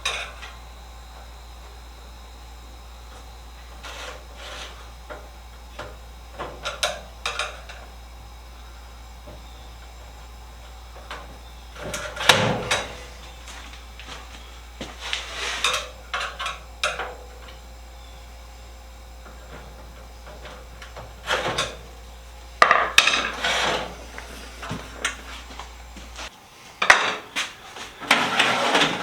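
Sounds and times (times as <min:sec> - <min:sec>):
steel drawers clanking and scraping: 0:11.0 - 0:13.4, 0:14.9 - 0:17.3, 0:19.3 - 0:22.0, 0:22.6 - 0:25.5, 0:26.8 - 0:29.0.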